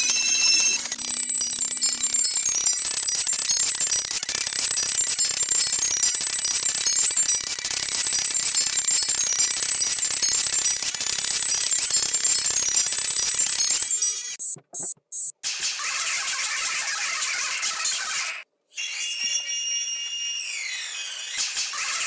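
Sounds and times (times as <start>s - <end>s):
high-pitched alarm beeps: 0.0s - 15.4s.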